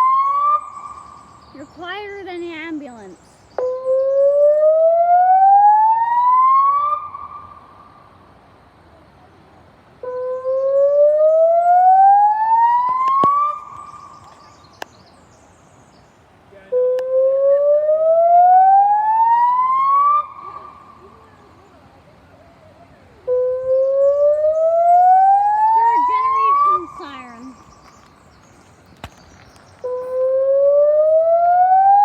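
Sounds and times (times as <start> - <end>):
siren rising whoop: 0.0 - 0.7, 3.8 - 7.4, 10.4 - 13.6, 16.8 - 20.7, 23.3 - 27.0, 30.0 - 32.0.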